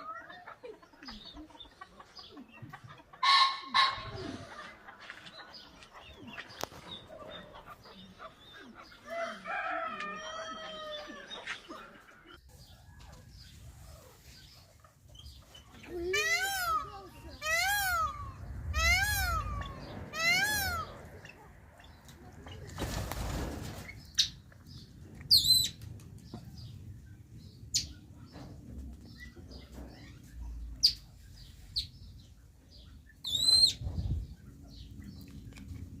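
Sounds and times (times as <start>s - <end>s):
peafowl honking calls: 3.2s - 4.7s, 16.1s - 21.5s
wings flapping: 22.6s - 24.1s.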